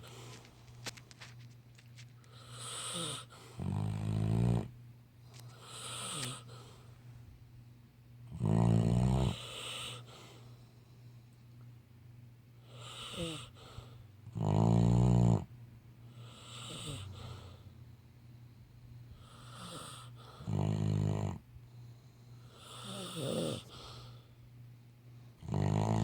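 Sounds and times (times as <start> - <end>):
dog snoring: 2.3 - 6.9, 8.3 - 10.5, 12.6 - 15.5, 16.1 - 17.7, 19.1 - 24.3, 25.4 - 26.0
hissing breaths: 21.7 - 24.4.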